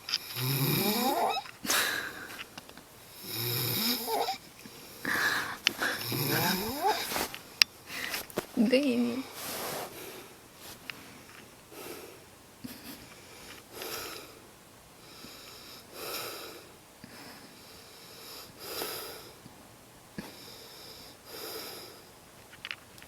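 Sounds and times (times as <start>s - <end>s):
man snoring: 0.2s - 2.4s, 3.1s - 7.3s.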